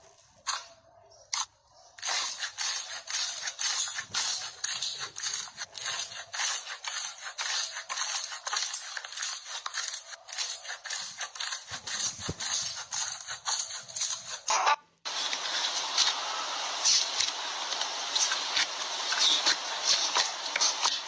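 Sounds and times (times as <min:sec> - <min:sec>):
slime squishing: 0:00.0 - 0:14.5.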